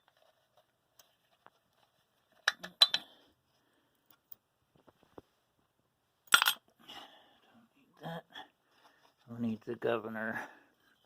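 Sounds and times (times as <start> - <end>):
metal parts clinking: 6.3 - 6.6.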